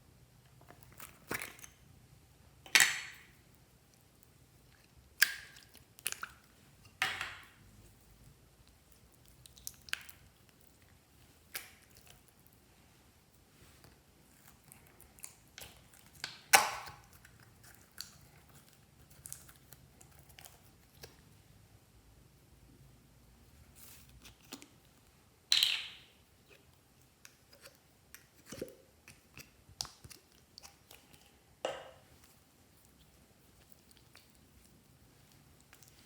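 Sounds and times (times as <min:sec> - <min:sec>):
slime squelching and popping: 0:04.7 - 0:07.6, 0:08.7 - 0:12.4, 0:14.2 - 0:21.2, 0:25.5 - 0:26.6.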